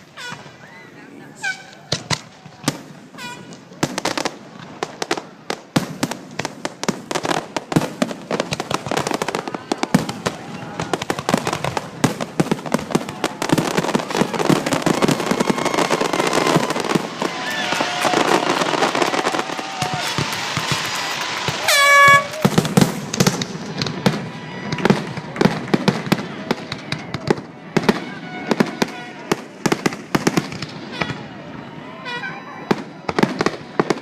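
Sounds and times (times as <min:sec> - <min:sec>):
fireworks bursting and crackling: 0:00.0 - 0:34.0
loud horn blast: 0:21.6 - 0:22.4.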